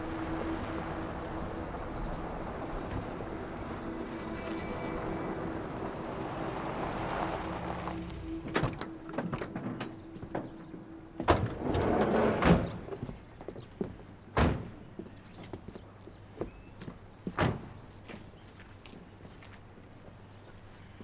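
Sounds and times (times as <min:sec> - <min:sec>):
door thunks: 0:14.4 - 0:14.8.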